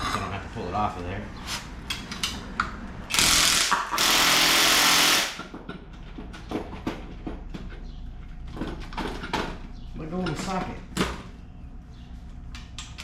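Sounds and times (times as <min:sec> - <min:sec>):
impact wrench bursts: 0:03.1 - 0:05.5.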